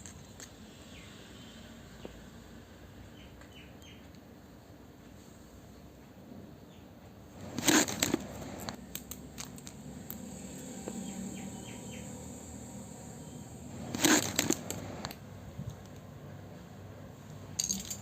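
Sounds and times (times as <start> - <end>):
packaging crinkling: 7.4 - 8.8
toy pieces clicking: 7.5 - 10.2.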